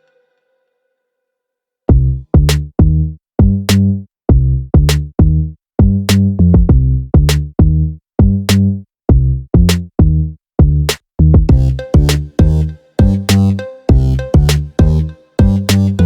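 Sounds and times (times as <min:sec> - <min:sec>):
electronic music with drum-machine beat: 0:11.4 - 0:16.0.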